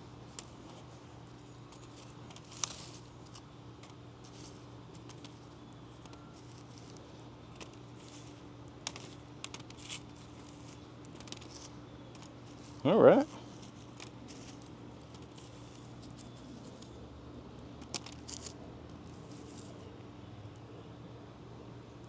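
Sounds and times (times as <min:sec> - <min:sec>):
hands rustling in straw: 0:00.0 - 0:17.1
faint steady hum: 0:00.0 - 0:22.0.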